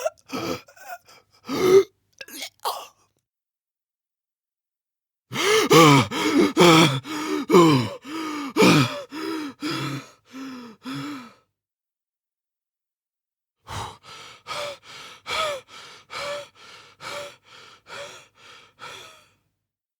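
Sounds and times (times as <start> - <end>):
man panting heavily: 5.3 - 11.4, 13.7 - 19.4.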